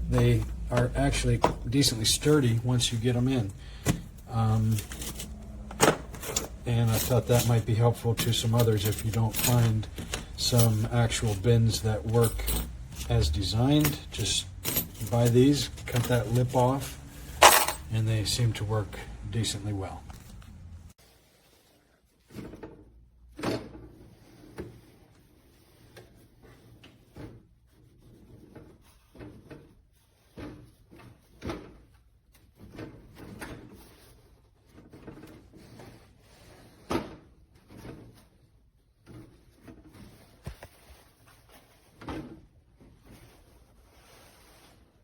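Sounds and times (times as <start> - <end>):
workbench drawers sliding: 0.1 - 18.5.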